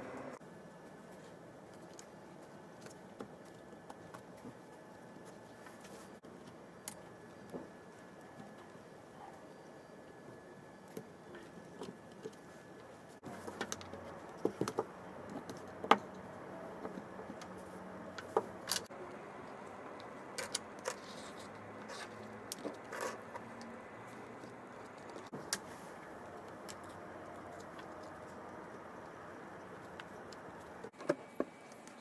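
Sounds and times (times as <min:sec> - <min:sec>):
small hard parts clicking: 0:11.8 - 0:32.0.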